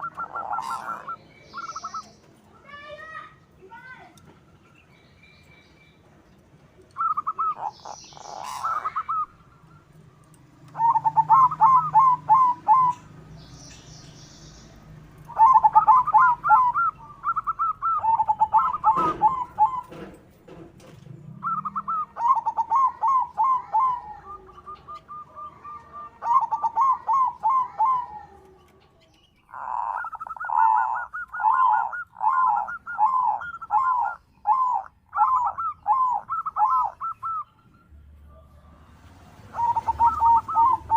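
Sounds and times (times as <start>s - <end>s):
dove cooing in rolling notes: 0.0s - 2.1s, 7.0s - 9.6s, 10.6s - 13.2s, 15.2s - 20.1s, 20.9s - 28.8s, 29.5s - 37.5s, 38.3s - 40.9s.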